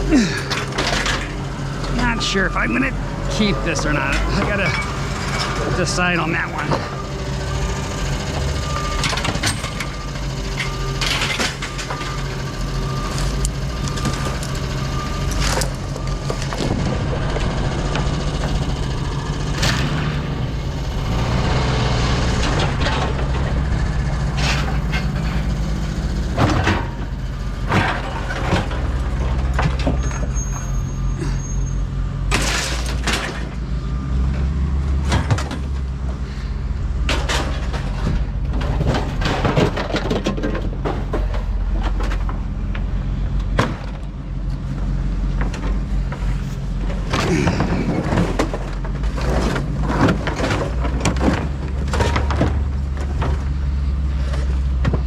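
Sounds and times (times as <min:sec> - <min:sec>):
vehicle engine running: 0:00.0 - 0:55.0
sharp knocks and clanks: 0:15.4 - 0:30.4.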